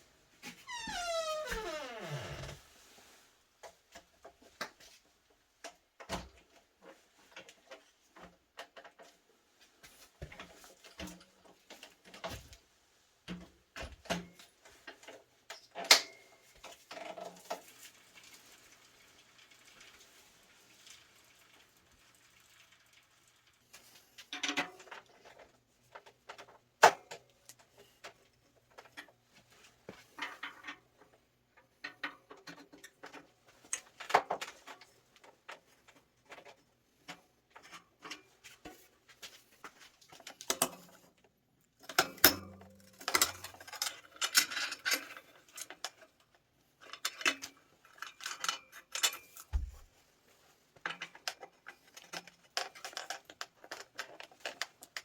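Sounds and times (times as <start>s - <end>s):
low thump: 49.6s - 49.9s.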